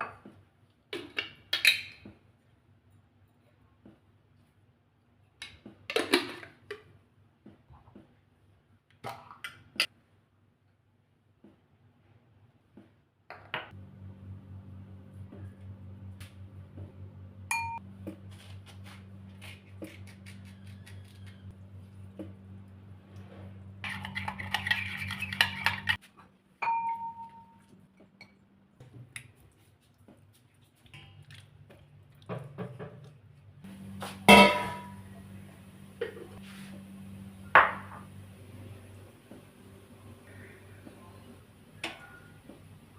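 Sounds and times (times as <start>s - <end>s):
steady low hum: 13.7s - 26.0s, 33.5s - 42.9s
dish clinking: 34.3s - 35.0s
ringing metallic clank: 34.3s - 35.0s.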